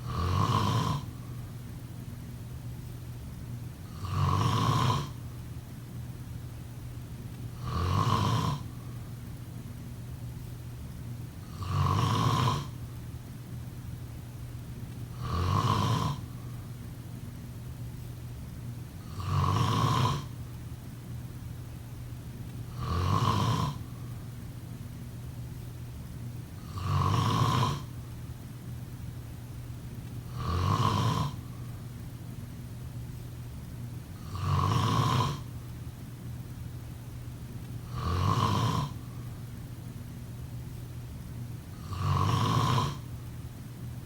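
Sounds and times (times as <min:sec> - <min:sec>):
person snoring: 0:00.0 - 0:01.2, 0:03.9 - 0:05.2, 0:07.6 - 0:08.7, 0:11.5 - 0:12.8, 0:15.2 - 0:16.4, 0:19.0 - 0:20.4, 0:22.7 - 0:23.9, 0:26.6 - 0:27.9, 0:30.3 - 0:31.5, 0:34.2 - 0:35.5, 0:37.9 - 0:39.0, 0:41.8 - 0:43.1
steady low hum: 0:00.0 - 0:44.0.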